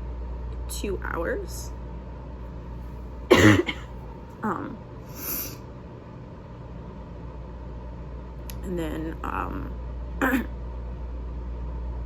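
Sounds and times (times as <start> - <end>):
person coughing: 3.3 - 3.9, 10.2 - 10.5
voiced throat sound: 3.3 - 3.9, 10.2 - 10.5
sniff: 5.1 - 5.6.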